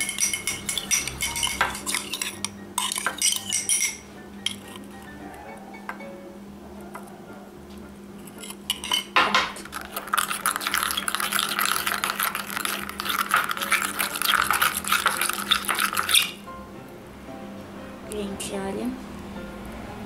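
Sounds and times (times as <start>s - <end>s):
utensil stirring slime: 0.0s - 5.1s, 8.2s - 16.4s
utensil scraping container sides: 8.2s - 16.4s.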